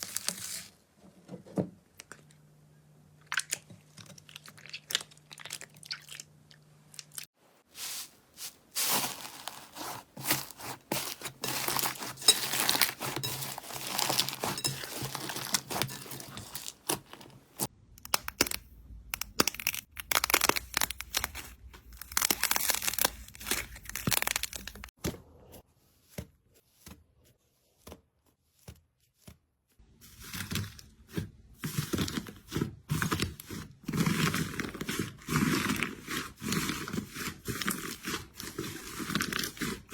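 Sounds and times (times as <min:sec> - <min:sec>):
slime crackling and crunching: 0:07.8 - 0:25.0, 0:31.7 - 0:39.9.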